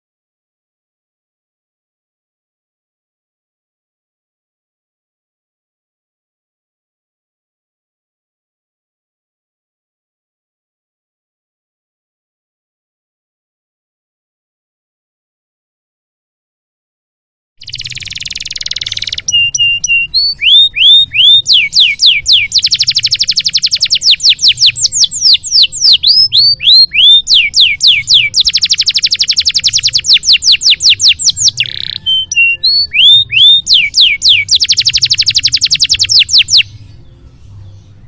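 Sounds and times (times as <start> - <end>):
canary singing: 17.6 - 38.0.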